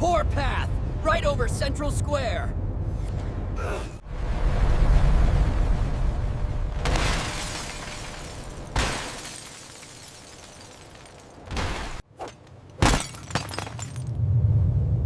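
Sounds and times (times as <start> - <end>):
low rumble: 2.3 - 6.9, 13.8 - 15.0
sharp crashes and shattering: 6.6 - 14.1.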